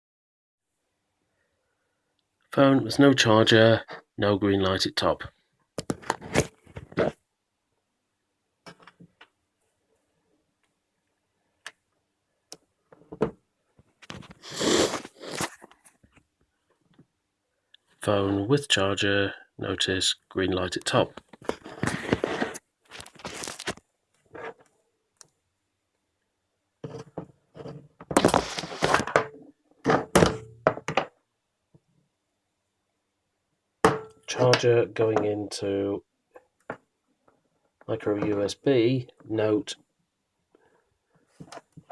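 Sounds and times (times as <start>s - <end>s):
scraping rustle: 28.2s - 29.0s.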